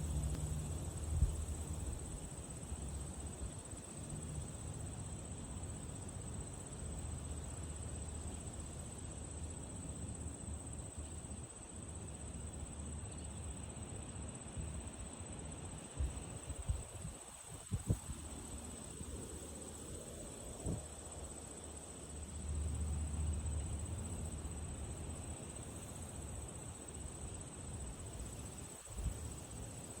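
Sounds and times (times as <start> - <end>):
insects trilling: 0.0 - 30.0
wind rustling grass: 15.7 - 21.0, 25.2 - 30.0.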